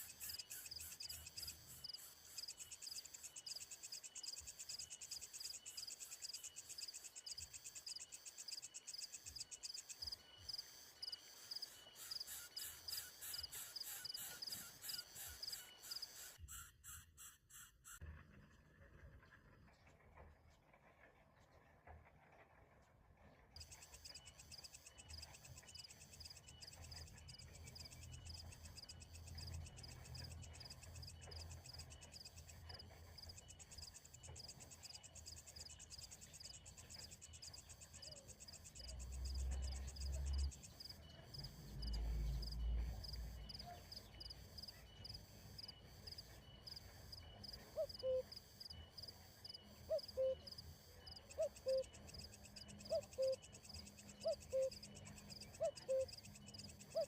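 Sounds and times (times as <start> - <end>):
insects trilling: 0.0 - 16.6.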